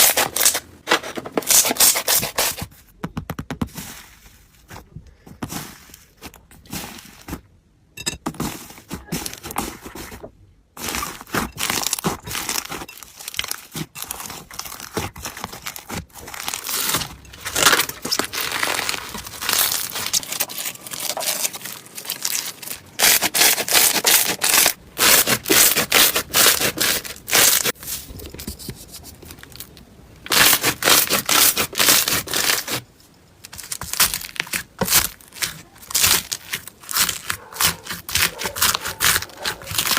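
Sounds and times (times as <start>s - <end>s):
slime crackling and popping: 33.5s - 39.9s.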